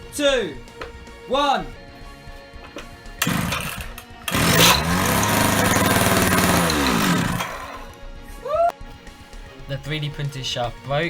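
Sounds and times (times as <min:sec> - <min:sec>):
two-stroke engine revving: 0:03.2 - 0:07.9.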